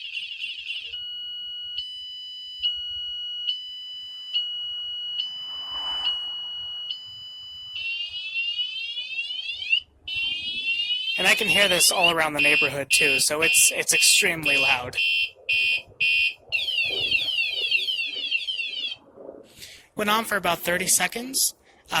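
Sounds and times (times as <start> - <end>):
high piercing alarm tone: 0.4 - 19.0
rapid falling siren sweeps: 4.7 - 13.5, 14.5 - 19.1.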